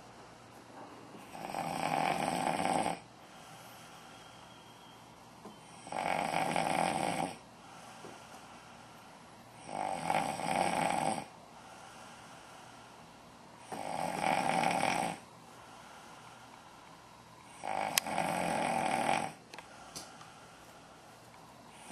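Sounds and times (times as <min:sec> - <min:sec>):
quiet breathing: 0:00.0 - 0:21.9
person snoring: 0:01.2 - 0:04.3, 0:05.7 - 0:08.8, 0:09.6 - 0:12.9, 0:13.6 - 0:16.4, 0:17.5 - 0:19.4.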